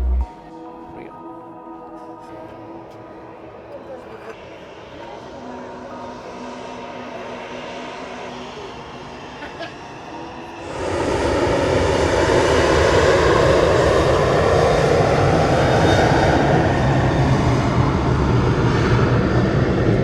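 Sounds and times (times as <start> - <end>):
jet engines running: 4.4 - 20.0.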